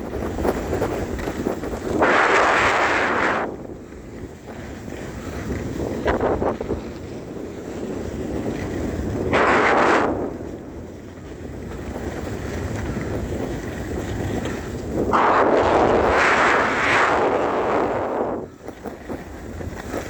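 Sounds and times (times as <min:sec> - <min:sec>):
wind rushing over microphone: 0:00.0 - 0:20.0
low rumble: 0:15.0 - 0:18.5.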